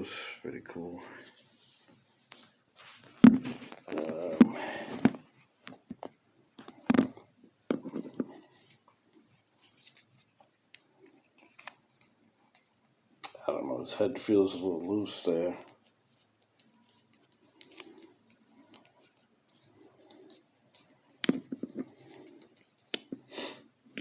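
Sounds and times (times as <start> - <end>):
packaging rustling: 2.0 - 12.7.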